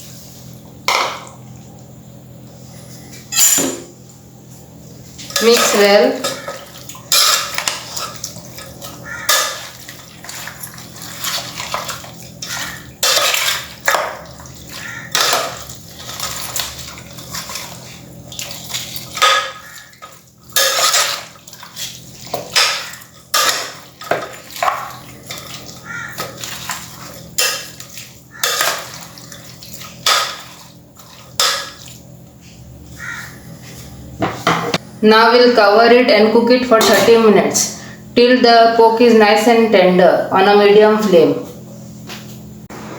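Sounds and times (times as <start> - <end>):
low steady hum: 0.0 - 42.9
spoon scraping a pan: 5.2 - 18.0, 19.0 - 30.5.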